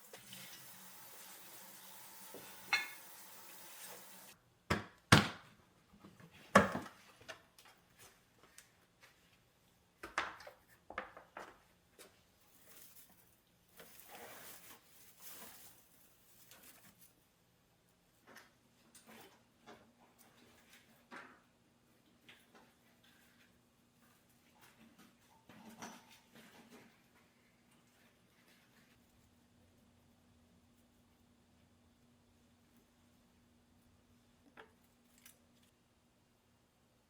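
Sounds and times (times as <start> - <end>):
faint steady hiss: 0.0 - 4.5
dishes and utensils clinking: 2.4 - 3.2.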